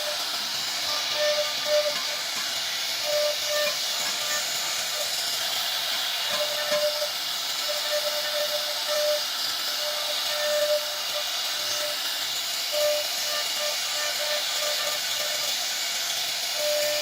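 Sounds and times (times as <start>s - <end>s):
wood router hissing: 0.0s - 17.0s.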